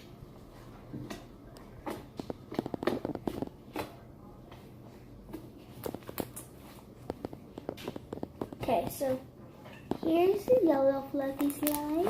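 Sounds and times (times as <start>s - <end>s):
slime being squished: 1.1s - 4.6s, 11.2s - 12.0s
sticky clicks and pops: 1.8s - 4.0s, 11.4s - 12.0s.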